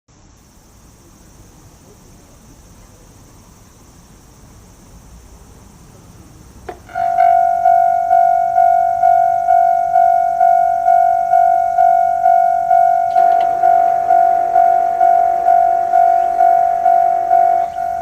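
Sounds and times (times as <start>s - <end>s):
faint hiss: 0.1s - 18.0s
electronic warning bell ringing: 6.9s - 18.0s.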